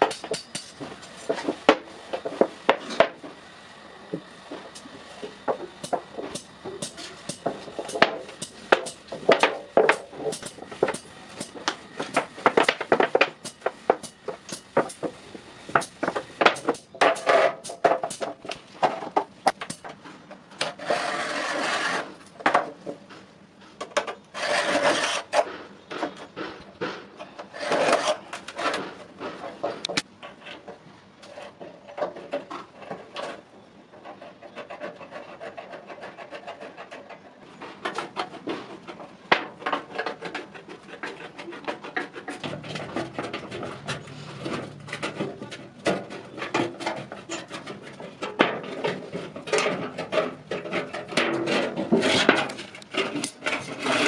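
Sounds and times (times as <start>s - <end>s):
hand tool scraping iron: 0.0s - 3.4s, 4.1s - 23.1s, 24.0s - 54.0s.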